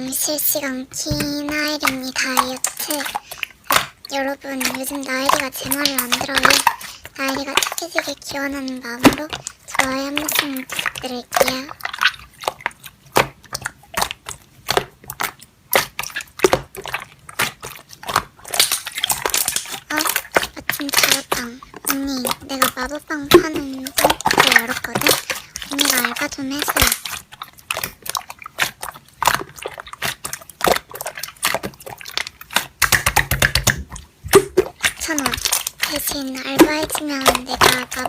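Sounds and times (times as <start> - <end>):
slime squished by hand: 0.1 - 38.0
slime clicking pops: 32.5 - 35.9.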